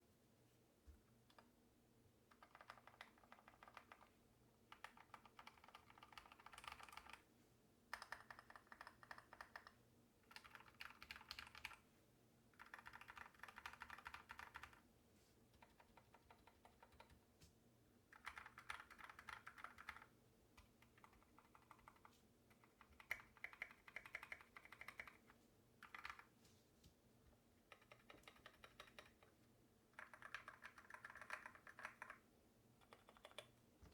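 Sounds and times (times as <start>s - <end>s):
faint steady hum: 0.0s - 33.9s
mechanical keyboard typing: 2.3s - 7.2s, 8.0s - 11.8s, 12.6s - 14.8s, 15.6s - 17.2s, 18.2s - 20.1s, 20.8s - 26.3s, 27.7s - 29.3s, 30.0s - 32.2s, 32.8s - 33.5s.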